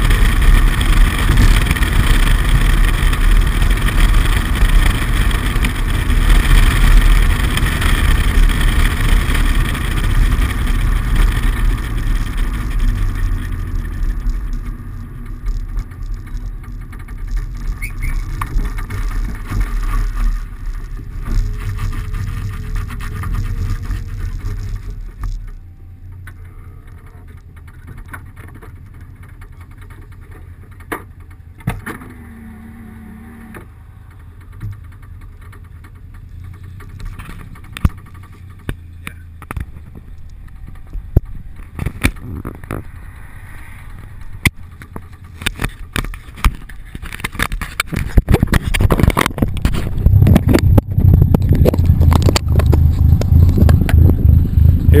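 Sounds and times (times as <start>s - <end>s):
wind noise: 0.0s - 25.5s, 36.8s - 55.0s
sharp knocks and clicks: 0.0s - 32.2s, 33.5s - 42.9s, 44.2s - 54.8s
car engine rumbling: 0.0s - 55.0s.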